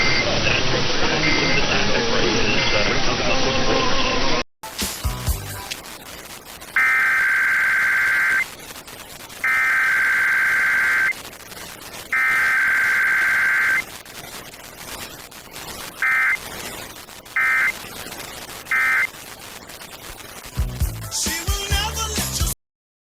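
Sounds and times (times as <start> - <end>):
shrill buzzing data bursts: 5.0 - 21.8.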